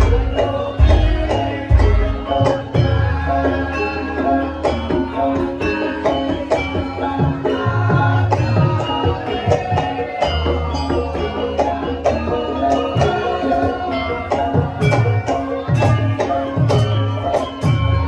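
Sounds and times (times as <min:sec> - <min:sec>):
deep drum strokes: 0:00.0 - 0:03.1
metallophones ringing: 0:00.0 - 0:18.0.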